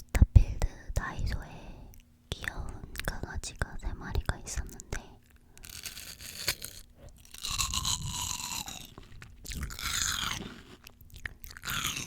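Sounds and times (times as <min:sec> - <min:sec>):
crunching and chewing fruit: 0:05.2 - 0:12.0.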